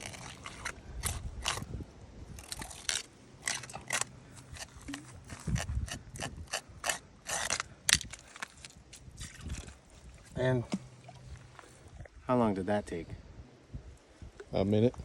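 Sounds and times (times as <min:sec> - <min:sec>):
knife scraping fish: 0:00.0 - 0:01.7, 0:02.4 - 0:08.8.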